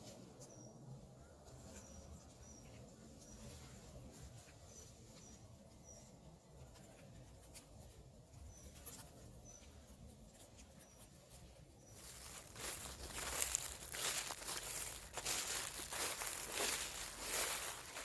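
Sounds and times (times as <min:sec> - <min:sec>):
small bird calling: 0:11.8 - 0:18.0
dry leaves rustling: 0:11.9 - 0:18.0.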